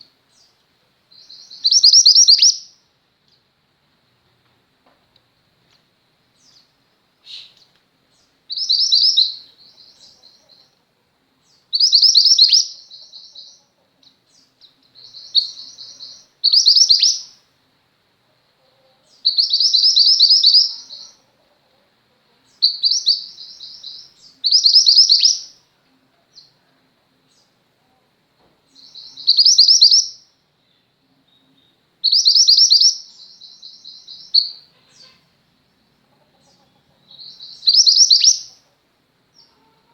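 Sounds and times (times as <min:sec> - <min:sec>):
songbird trilling: 0:01.1 - 0:02.8, 0:06.4 - 0:10.7, 0:11.4 - 0:13.6, 0:14.3 - 0:17.4, 0:19.1 - 0:21.2, 0:22.5 - 0:25.6, 0:28.7 - 0:30.3, 0:31.3 - 0:35.2, 0:36.4 - 0:38.6.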